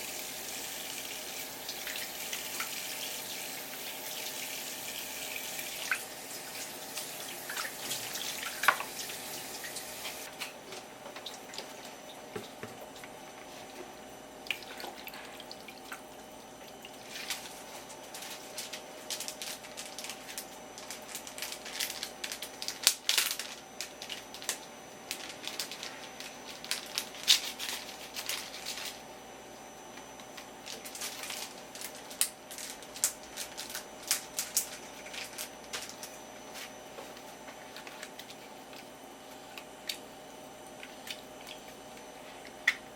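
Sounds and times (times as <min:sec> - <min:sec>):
kitchen tap running: 0:00.0 - 0:10.3.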